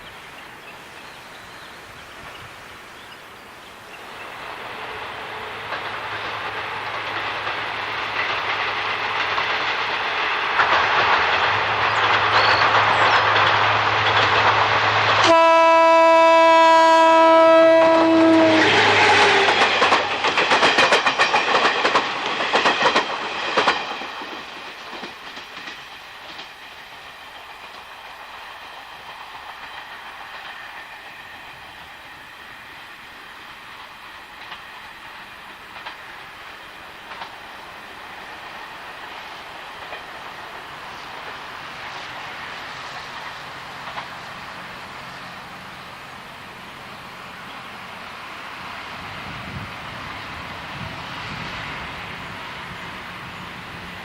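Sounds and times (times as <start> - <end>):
train passing: 0.0 - 54.0
wheels clacking over rail joints: 3.8 - 32.4, 33.4 - 45.9
train horn blast: 15.2 - 19.6.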